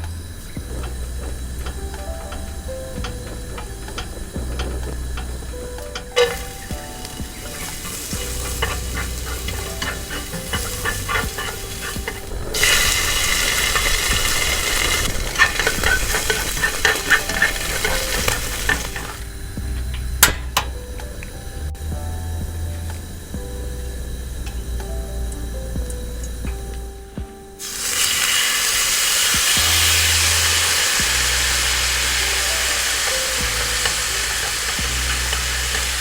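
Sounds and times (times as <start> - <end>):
food sizzling in a frying pan: 0.2 - 19.6, 27.6 - 36.0
utensil scraping a pan: 3.1 - 19.3, 27.6 - 36.0.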